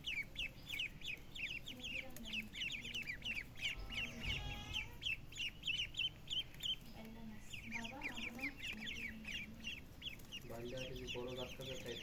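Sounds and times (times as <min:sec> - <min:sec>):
young poultry peeping: 0:00.0 - 0:12.0
loud bird call: 0:03.7 - 0:06.1.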